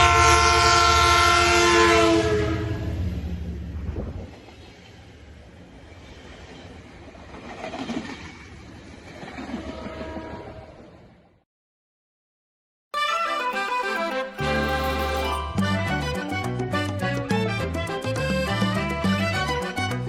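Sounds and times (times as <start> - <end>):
train horn chord: 0.0 - 3.0, 13.0 - 16.9
passing train rumble: 0.0 - 11.4.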